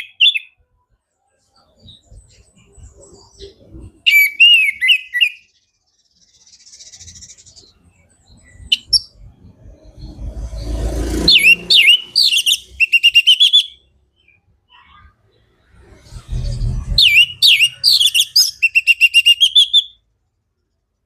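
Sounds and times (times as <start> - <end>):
thrush singing whistled phrases: 4.0 - 5.5, 11.3 - 14.4, 15.7 - 20.0
brief rushing noise: 15.7 - 17.7.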